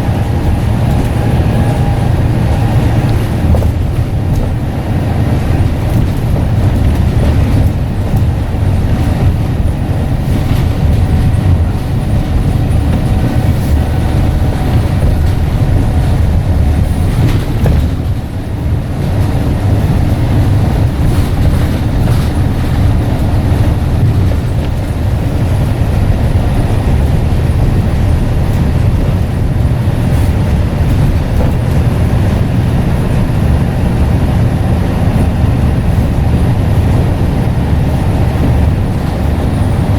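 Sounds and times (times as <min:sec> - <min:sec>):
bus diesel engine rumble: 0:00.0 - 0:39.9.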